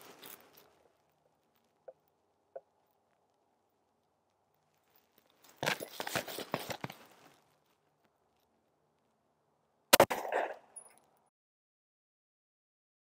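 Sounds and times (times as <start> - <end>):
crunching handling noise: 4.6 - 8.5.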